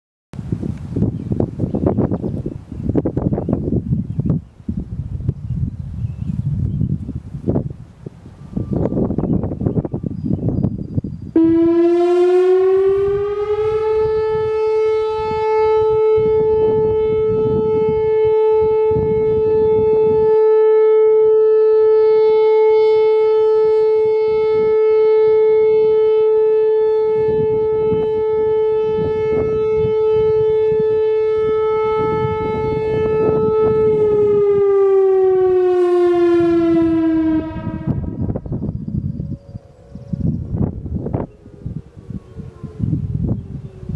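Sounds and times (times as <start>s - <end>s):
wind rumble on microphone: 0.4s - 43.9s
electronic warning siren: 7.5s - 43.9s.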